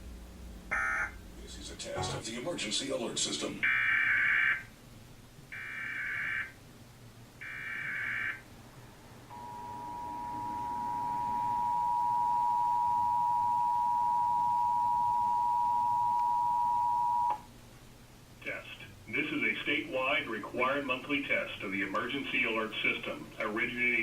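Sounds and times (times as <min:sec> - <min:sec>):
two-tone attention signal: 0:00.7 - 0:01.2, 0:02.0 - 0:02.2, 0:09.3 - 0:17.3.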